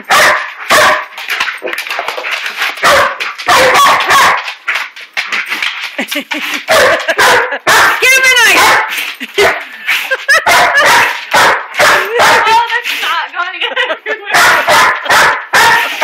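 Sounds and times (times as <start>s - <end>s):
dog barking: 0.1s - 1.1s, 2.8s - 4.5s, 6.7s - 9.6s, 10.3s - 12.6s, 14.3s - 16.0s
dog sneezing: 15.6s - 16.0s.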